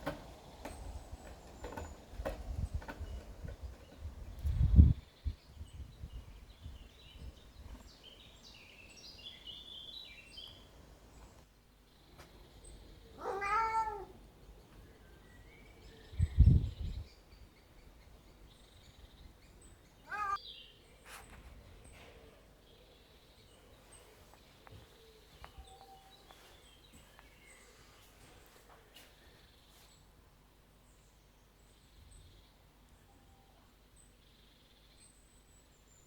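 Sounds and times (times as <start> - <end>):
cat meowing: 13.2 - 14.2, 20.1 - 20.4.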